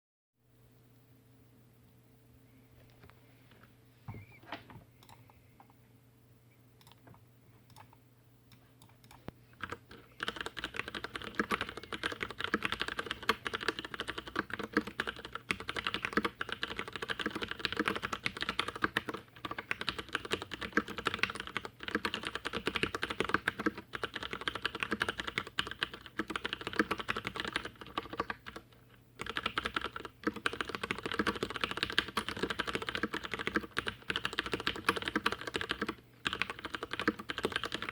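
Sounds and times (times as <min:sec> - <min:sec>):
typing on mechanical keyboard: 0:08.8 - 0:37.9.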